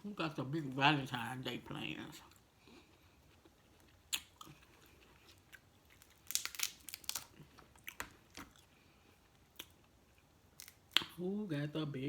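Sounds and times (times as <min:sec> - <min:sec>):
crunches and cracks of eating: 0:02.2 - 0:11.2.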